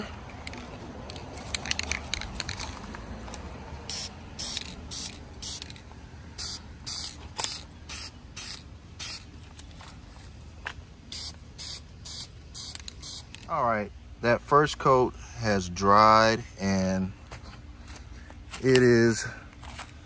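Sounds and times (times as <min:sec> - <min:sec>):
spray can hissing: 0:03.9 - 0:05.8, 0:06.4 - 0:09.3, 0:11.1 - 0:13.4.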